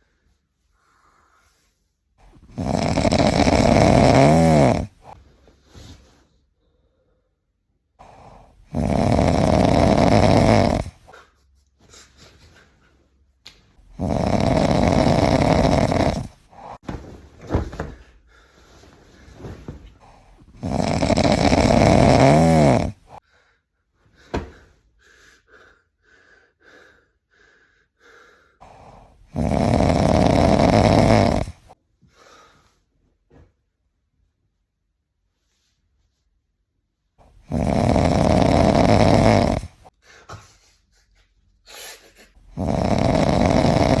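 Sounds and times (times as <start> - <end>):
loud snoring: 2.4 - 5.2, 8.0 - 11.1, 13.9 - 16.8, 20.2 - 23.2, 28.6 - 31.8, 37.2 - 39.9, 42.5 - 44.0.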